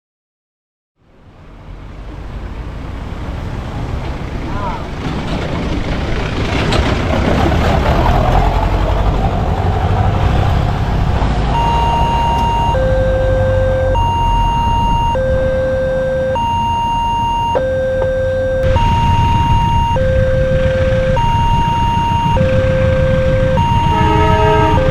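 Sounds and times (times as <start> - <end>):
road traffic rumbling: 1.0 - 24.9
level-crossing warning tones: 11.5 - 24.9.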